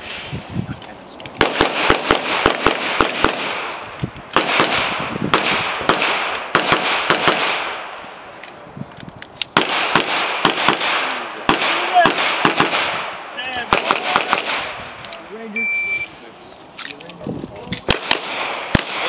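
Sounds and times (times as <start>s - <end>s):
rapid pistol shots: 1.4s - 7.9s, 9.5s - 14.8s, 17.8s - 19.0s.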